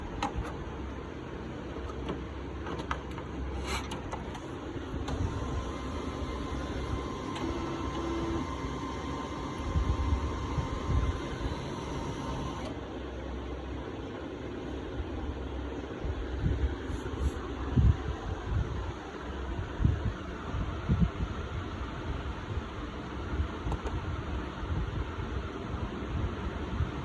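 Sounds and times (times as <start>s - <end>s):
printer humming: 0.0s - 14.8s
printer clicks: 1.8s - 12.8s.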